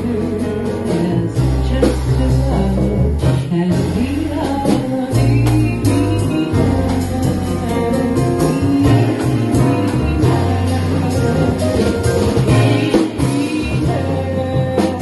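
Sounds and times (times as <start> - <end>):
double bass low notes: 0.0 - 15.0
piano chords: 0.0 - 15.0.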